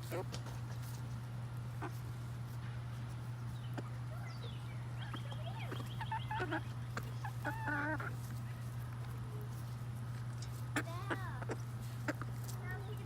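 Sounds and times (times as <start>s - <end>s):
hens clucking: 0.0s - 13.0s
steady low hum: 0.0s - 13.0s
hen squawking: 3.8s - 8.2s.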